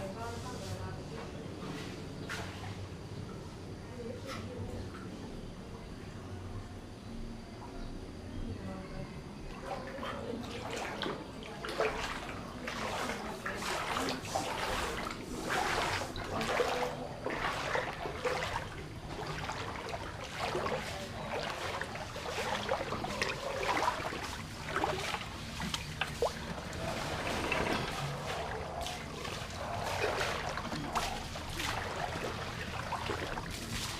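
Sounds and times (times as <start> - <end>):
floodwater splashing and sloshing: 1.6 - 3.0, 9.5 - 33.9.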